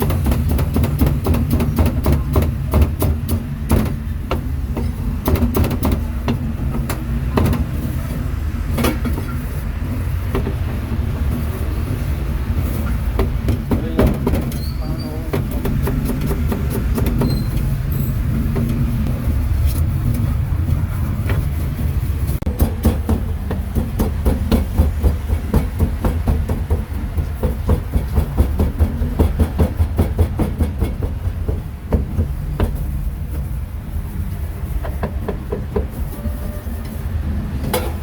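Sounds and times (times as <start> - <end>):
cleaver chopping meat on wooden board: 0.0 - 4.4
low rumble: 15.3 - 22.6.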